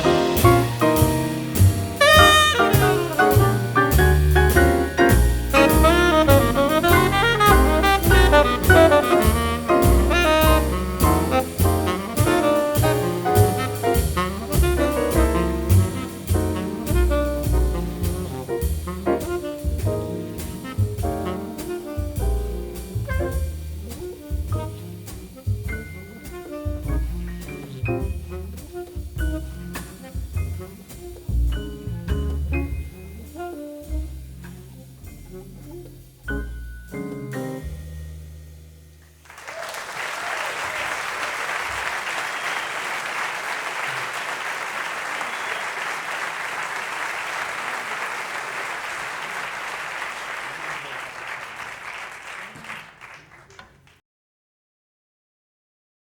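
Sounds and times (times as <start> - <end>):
jazz music with saxophone: 0.0 - 38.7
audience applauding: 39.2 - 54.0.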